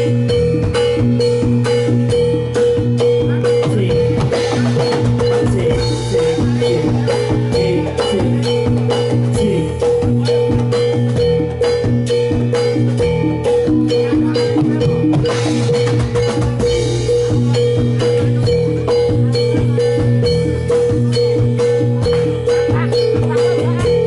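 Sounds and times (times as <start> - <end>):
drums: 0.0 - 24.0
metallophones ringing: 0.0 - 24.0.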